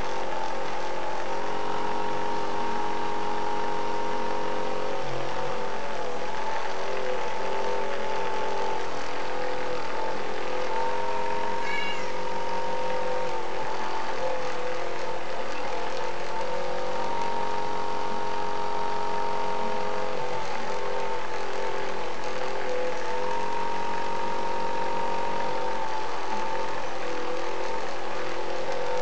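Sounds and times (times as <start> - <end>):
massager motor humming: 0.0 - 29.0
cat meowing: 11.6 - 12.2.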